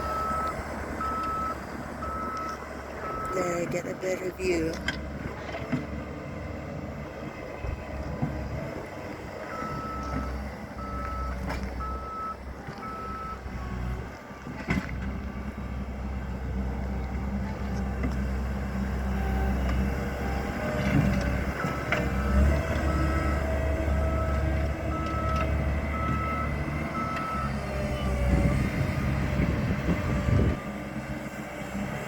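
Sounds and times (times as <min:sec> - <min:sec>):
backup alarm beeping: 0:00.0 - 0:03.8, 0:10.8 - 0:13.4
bulldozer engine running: 0:00.0 - 0:32.0.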